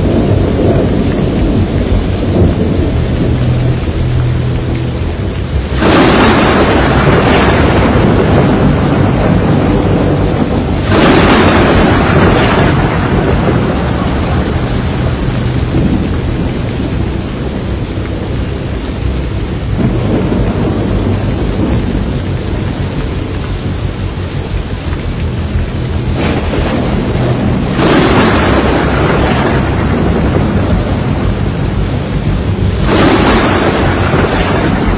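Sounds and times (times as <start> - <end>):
heavy steady rain: 0.0 - 34.9
thunder cracks and rumble: 0.0 - 34.9.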